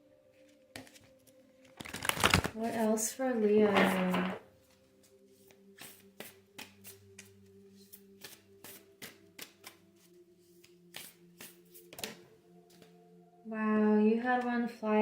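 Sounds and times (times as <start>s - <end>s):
cards being shuffled by hand: 0.7s - 3.1s, 3.7s - 4.4s, 5.4s - 12.9s.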